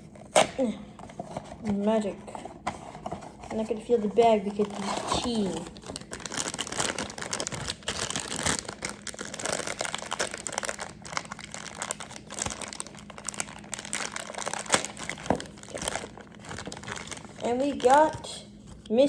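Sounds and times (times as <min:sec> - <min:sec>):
plastic bag crinkling: 0:03.4 - 0:18.7.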